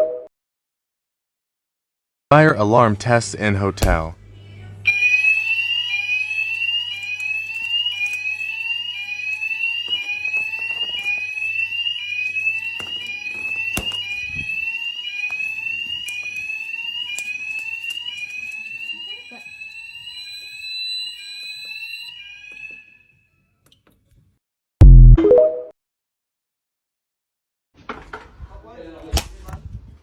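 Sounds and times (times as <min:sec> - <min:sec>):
fire alarm rising sweep tone: 0:04.9 - 0:23.3.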